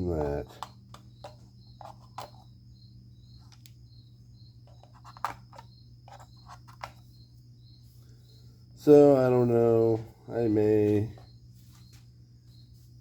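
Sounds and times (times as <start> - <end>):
cricket chirping: 0.0 - 13.0
plastic parts clicking: 4.7 - 7.0.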